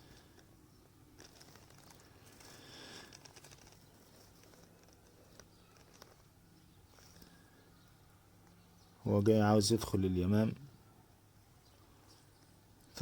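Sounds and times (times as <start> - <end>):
light rustle: 1.2 - 7.6.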